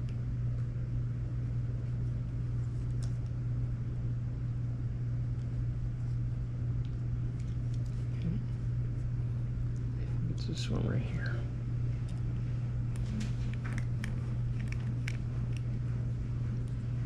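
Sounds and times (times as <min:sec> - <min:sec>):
low hum: 0:00.0 - 0:17.0.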